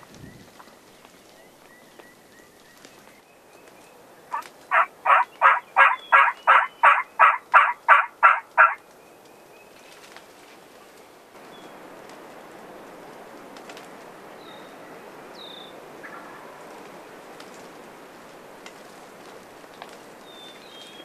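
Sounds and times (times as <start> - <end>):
turkey yelping: 4.3 - 8.8.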